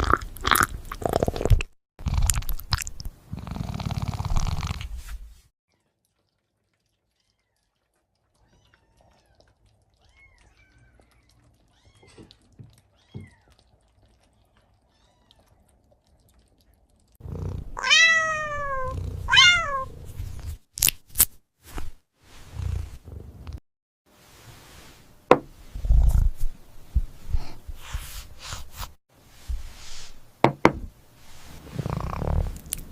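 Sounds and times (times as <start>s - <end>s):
cat meowing: 17.8s - 20.0s.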